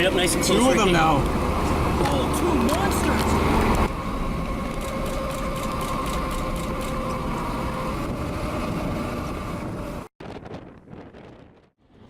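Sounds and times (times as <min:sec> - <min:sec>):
car engine and road noise: 0:00.0 - 0:12.0.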